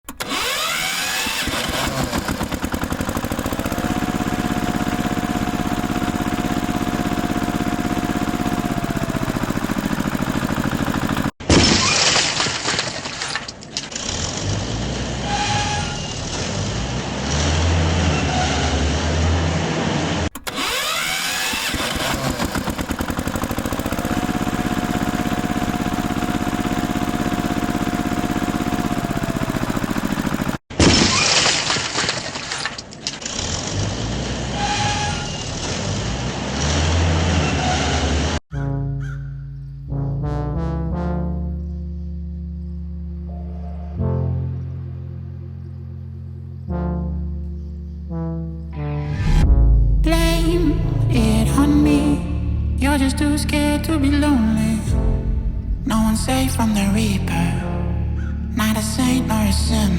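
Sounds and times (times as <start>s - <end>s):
uneven engine and machinery noise: 0.0s - 38.4s, 48.7s - 59.9s
heavy machine engine whine: 0.2s - 11.4s, 15.0s - 30.6s
sudden bang: 48.8s - 52.8s, 54.8s - 58.2s.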